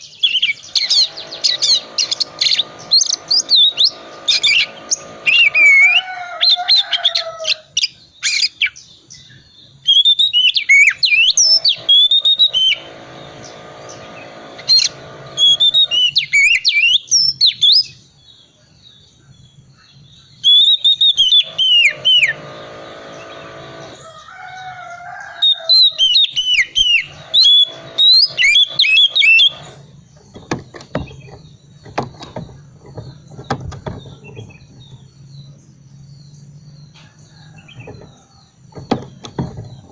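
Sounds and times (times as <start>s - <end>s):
bird singing rapid chirps: 0.0s - 39.9s.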